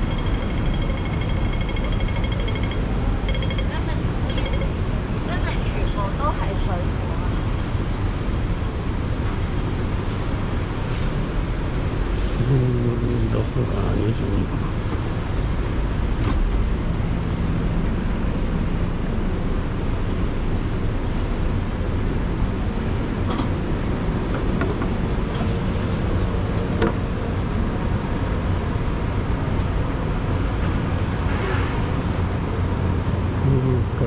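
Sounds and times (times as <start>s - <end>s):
road traffic running past: 0.0s - 34.0s.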